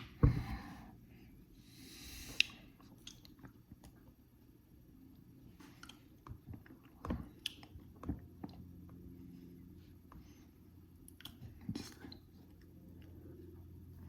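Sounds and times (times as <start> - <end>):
low steady hum: 0.0 - 14.0
small wet clicks: 2.4 - 4.0.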